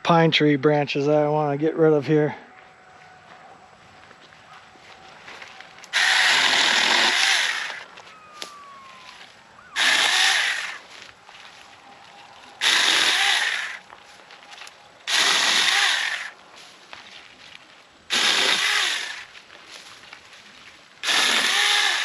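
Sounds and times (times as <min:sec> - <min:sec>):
electric chainsaw cutting branches: 0:05.8 - 0:11.6, 0:12.5 - 0:14.0, 0:14.6 - 0:16.4, 0:18.1 - 0:19.4, 0:21.0 - 0:22.0.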